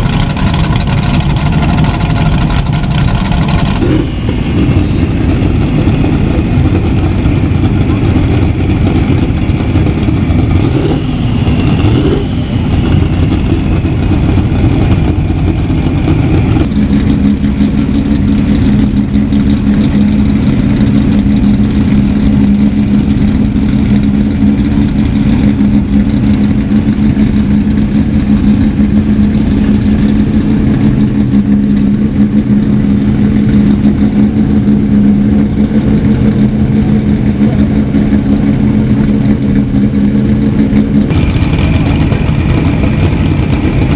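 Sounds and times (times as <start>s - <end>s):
deep drone: 0.0s - 43.9s
racing car engines: 0.0s - 43.9s.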